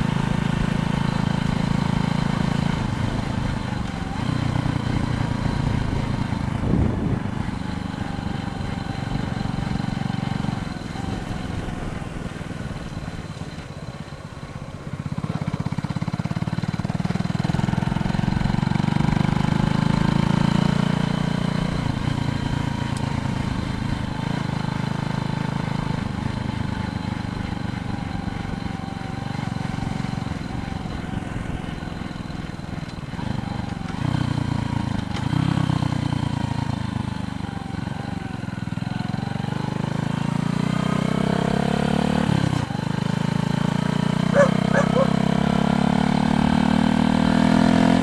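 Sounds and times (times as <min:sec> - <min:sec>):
wind buffeting microphone: 0:05.5 - 0:09.9.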